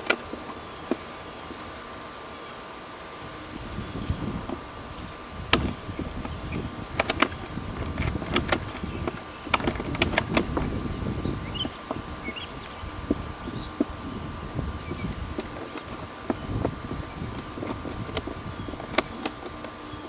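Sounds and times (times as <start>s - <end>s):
handling and rustling noise: 0.0s - 20.0s
ratchet strap clicks and rattles: 5.5s - 12.0s, 15.3s - 19.8s.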